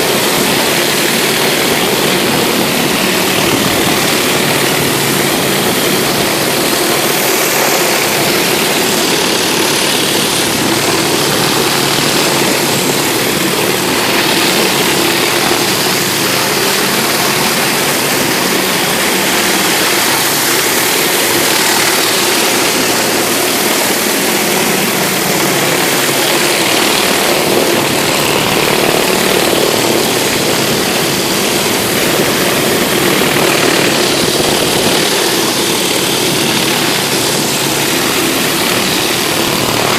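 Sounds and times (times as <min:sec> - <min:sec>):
pressure washer engine hum: 0:00.0 - 0:39.9
water spraying onto concrete: 0:00.0 - 0:39.9.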